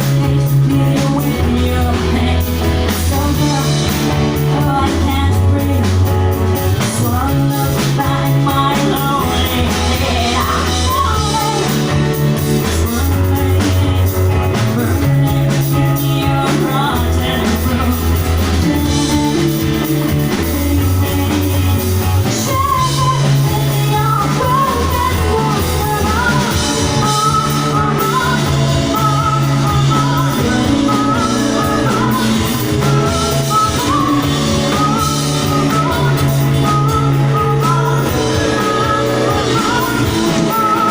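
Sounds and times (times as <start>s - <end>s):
bass line low notes: 0.0s - 40.9s
rock band playing live: 0.0s - 40.9s
person singing wavering voice: 12.6s - 40.9s.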